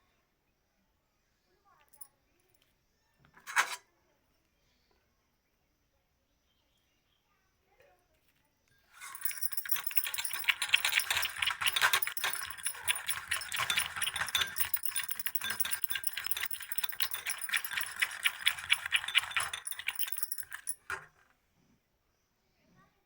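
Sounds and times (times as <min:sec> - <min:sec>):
rapid rattling of small hard objects: 0:09.0 - 0:21.2.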